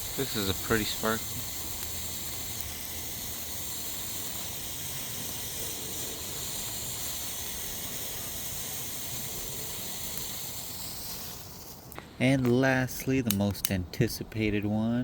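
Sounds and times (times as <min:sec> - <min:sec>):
firework spraying sparks with hiss: 0:00.0 - 0:13.7.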